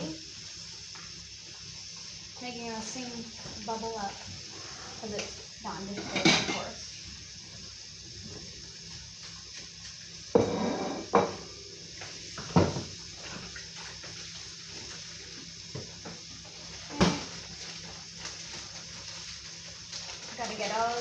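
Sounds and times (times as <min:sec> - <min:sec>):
running tap water: 0:00.0 - 0:21.0
dishes clattering: 0:05.9 - 0:06.8, 0:10.3 - 0:11.5, 0:12.4 - 0:12.9.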